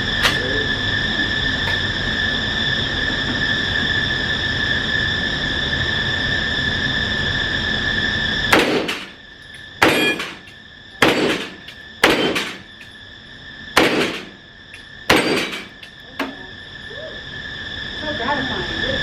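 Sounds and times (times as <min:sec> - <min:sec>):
suppressed gunshots: 0:08.5 - 0:09.1, 0:09.8 - 0:10.4, 0:11.0 - 0:12.6, 0:13.8 - 0:14.3, 0:15.1 - 0:15.7.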